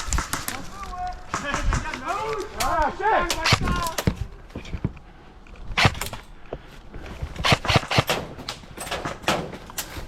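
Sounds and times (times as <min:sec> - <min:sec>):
airsoft guns firing sharp pops: 0:00.0 - 0:02.7, 0:07.4 - 0:09.2.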